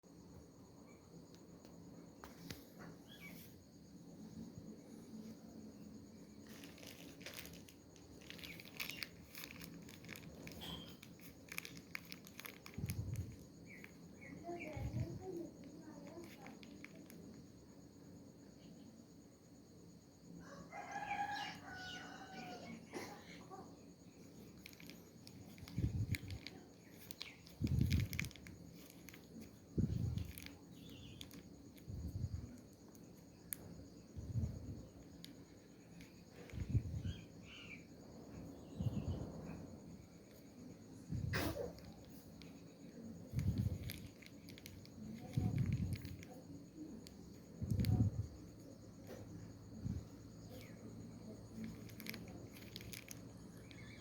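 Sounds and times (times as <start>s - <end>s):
insect chirps and clicks: 0.1s - 54.0s
bedding rustling and crinkling: 6.0s - 17.3s, 24.4s - 32.5s, 41.1s - 46.4s, 49.8s - 54.0s.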